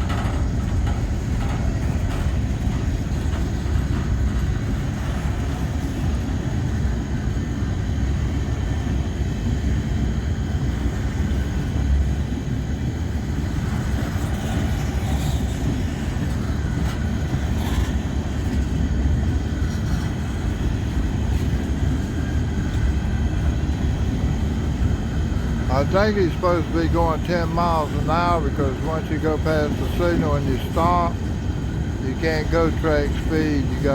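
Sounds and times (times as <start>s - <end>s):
faint clicks and clanks: 0.0s - 6.3s
train wheels rumbling on rail: 0.0s - 33.9s.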